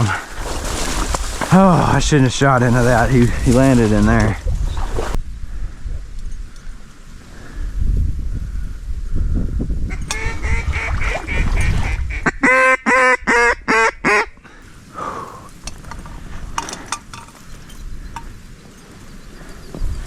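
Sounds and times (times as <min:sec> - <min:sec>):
duck quacking: 0:10.0 - 0:14.3.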